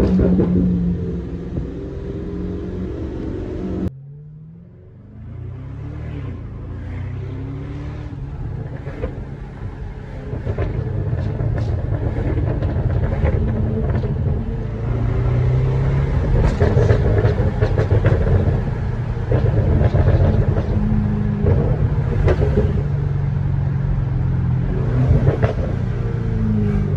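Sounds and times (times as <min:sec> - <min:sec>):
car engine revving: 0:00.0 - 0:26.9
exhaust pops and crackles: 0:10.3 - 0:14.6, 0:16.1 - 0:23.0.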